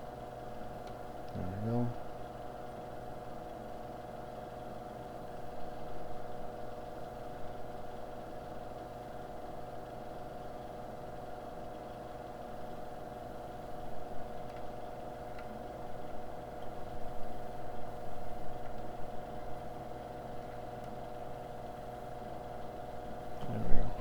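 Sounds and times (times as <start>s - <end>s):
faint light clicks and taps: 14.4s - 14.7s.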